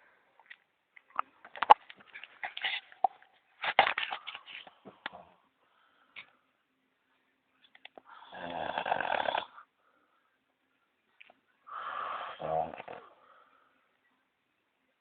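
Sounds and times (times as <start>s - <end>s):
quiet breathing: 4.0s - 14.2s
person snoring: 8.1s - 9.6s, 11.7s - 13.1s.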